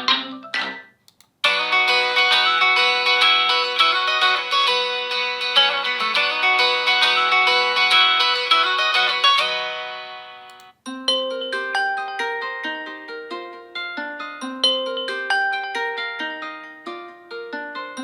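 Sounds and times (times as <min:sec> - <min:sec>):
ringtone with ringing notes: 0:00.3 - 0:18.0
phone ringtone melody: 0:01.4 - 0:17.0.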